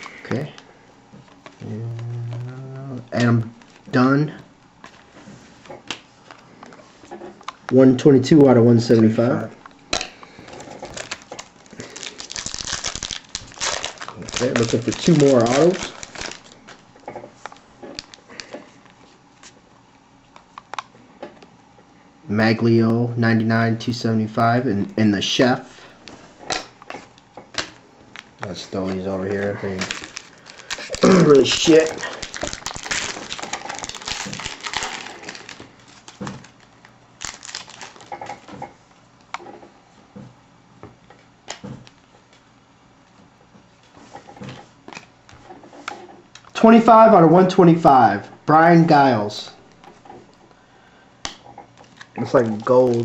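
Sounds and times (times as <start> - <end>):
faint room hiss: 0.0 - 53.0
wrapper crinkling: 10.2 - 18.4, 28.1 - 38.5, 51.7 - 53.0.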